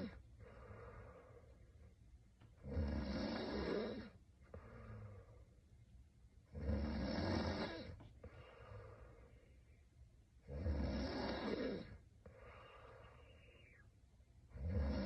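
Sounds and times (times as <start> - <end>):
woman snoring: 0.0 - 1.3, 2.6 - 5.3, 6.5 - 9.2, 10.5 - 13.5, 14.5 - 15.0.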